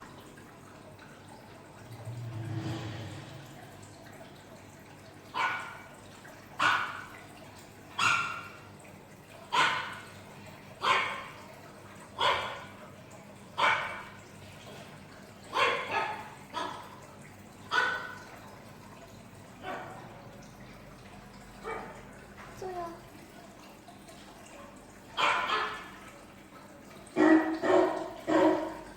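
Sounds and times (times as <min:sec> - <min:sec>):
dog barking: 0:05.3 - 0:05.9, 0:06.6 - 0:07.1, 0:08.0 - 0:08.6, 0:09.5 - 0:10.1, 0:10.8 - 0:11.4, 0:12.2 - 0:12.7, 0:13.6 - 0:14.2, 0:15.5 - 0:17.0, 0:17.7 - 0:18.2, 0:19.6 - 0:20.0, 0:21.6 - 0:22.0, 0:25.2 - 0:26.0, 0:27.2 - 0:28.8.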